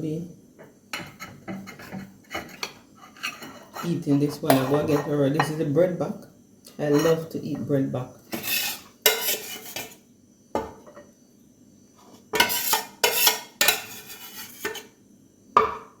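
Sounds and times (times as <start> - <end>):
cutlery and dishes clinking: 1.0 - 5.6, 8.3 - 10.0, 12.4 - 14.9.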